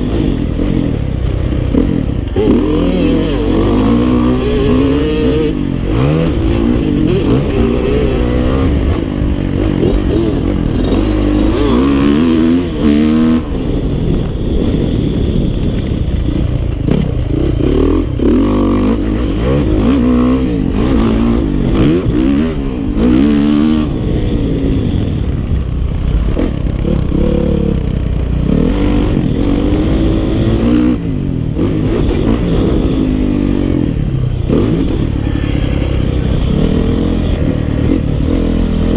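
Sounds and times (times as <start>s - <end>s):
dirt bike engine revving: 0.0s - 38.9s.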